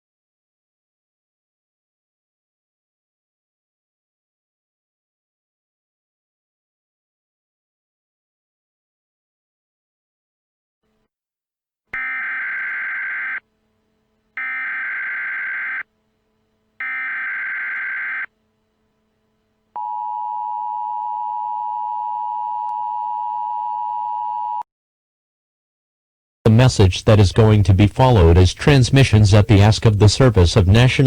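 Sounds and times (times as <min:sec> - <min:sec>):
two-tone attention signal: 0:12.0 - 0:13.4, 0:14.4 - 0:15.8, 0:16.8 - 0:18.3.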